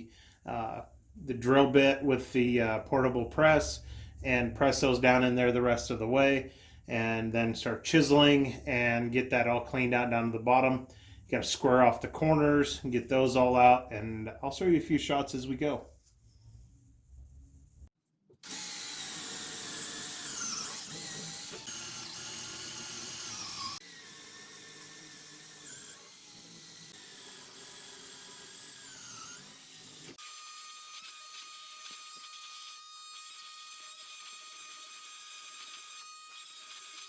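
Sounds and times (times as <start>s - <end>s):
power tool cutting wood: 18.4s - 37.0s.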